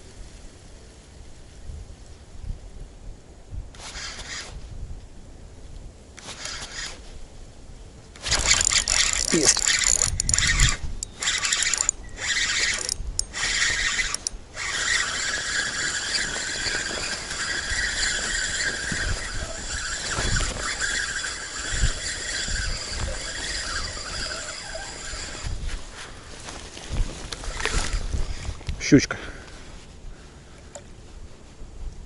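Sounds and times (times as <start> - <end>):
fishing reel whirring: 3.8 - 4.6, 6.2 - 7.0, 8.2 - 26.2, 27.3 - 28.6.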